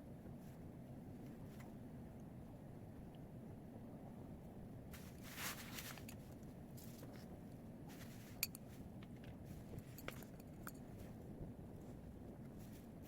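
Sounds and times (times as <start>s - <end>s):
low steady hum: 0.0s - 13.0s
light clicks and taps of objects: 4.9s - 13.0s.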